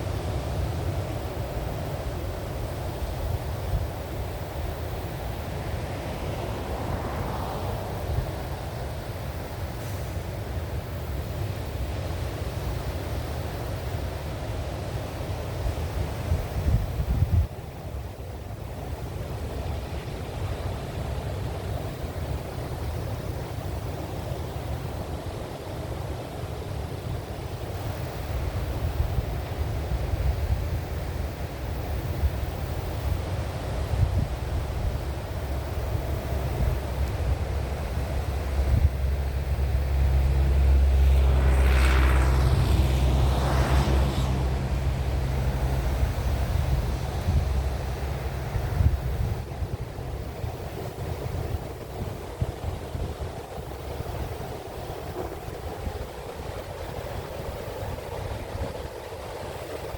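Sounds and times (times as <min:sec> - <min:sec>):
ocean surf: 0:00.0 - 0:59.9
passing vehicle engine: 0:04.3 - 0:11.2, 0:28.3 - 0:59.9
wind buffeting microphone: 0:16.0 - 0:18.1, 0:27.8 - 0:59.9.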